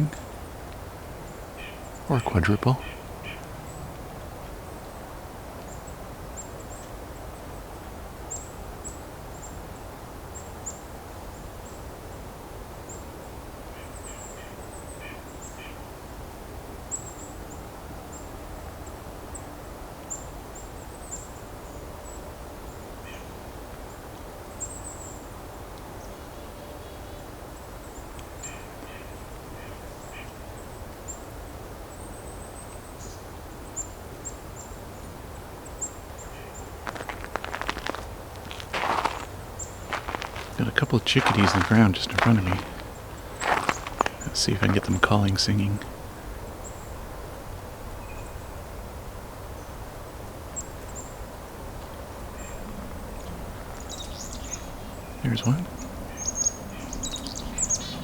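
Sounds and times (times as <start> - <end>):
lower bird calls: 52.4 - 58.0.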